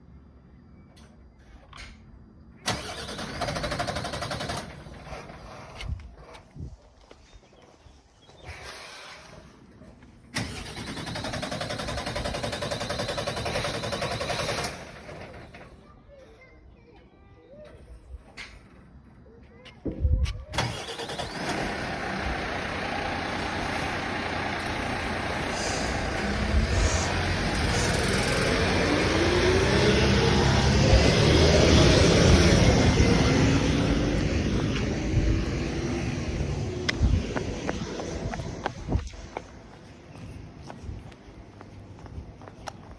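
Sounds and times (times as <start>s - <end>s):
diesel engine starter motor cranking: 2.6s - 5.9s, 10.3s - 15.7s, 20.5s - 36.6s.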